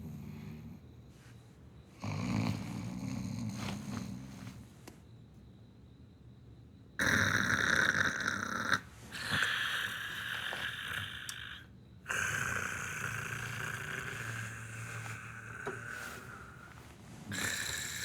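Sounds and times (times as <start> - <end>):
person snoring: 2.0 - 4.3, 7.0 - 18.0.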